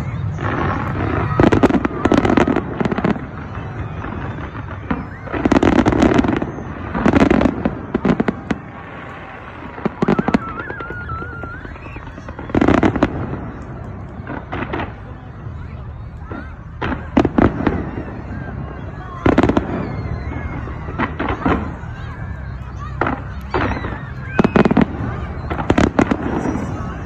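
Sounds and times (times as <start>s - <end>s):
firework whistle: 0.0s - 27.0s
fireworks bangs and crackling: 0.0s - 27.0s.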